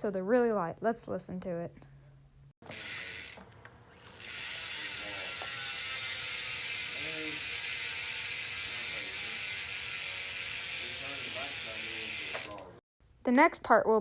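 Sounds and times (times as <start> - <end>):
bicycle hub freewheel buzzing: 2.6 - 12.8.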